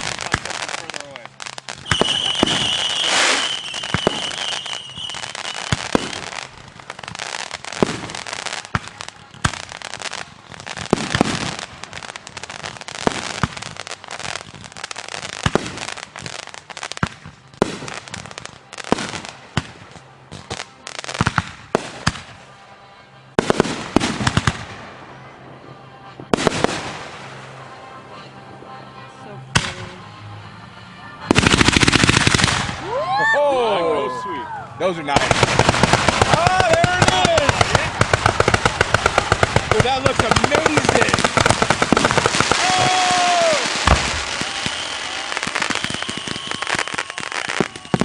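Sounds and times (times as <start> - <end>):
firework whistling: 0.0 - 22.5, 29.6 - 48.0
fireworks bangs and crackles: 0.0 - 22.6, 23.3 - 28.8, 29.5 - 30.6, 31.2 - 33.6, 34.7 - 48.0.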